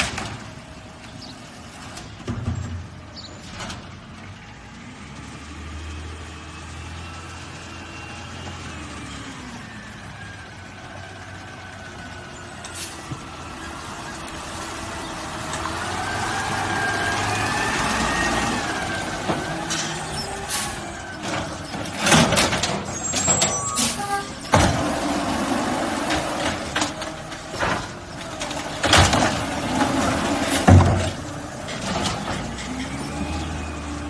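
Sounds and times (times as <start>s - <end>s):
garbage truck hydraulic whine: 15.5s - 34.0s
loud bangs and clatter: 24.4s - 32.8s.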